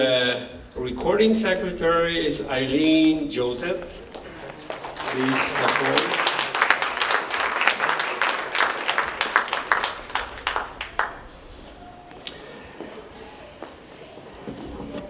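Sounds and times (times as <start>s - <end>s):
audience applauding: 3.8s - 13.7s.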